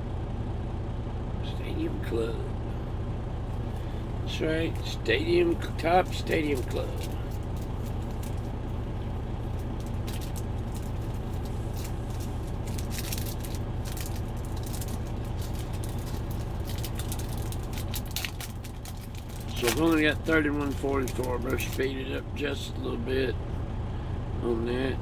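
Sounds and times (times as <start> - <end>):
low engine hum: 0.0 - 25.0
trading cards being handled: 3.4 - 22.0.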